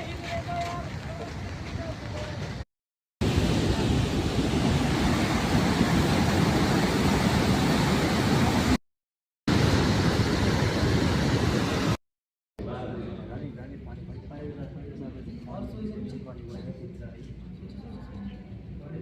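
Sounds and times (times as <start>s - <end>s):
river rushing: 3.2s - 8.8s, 9.5s - 12.0s.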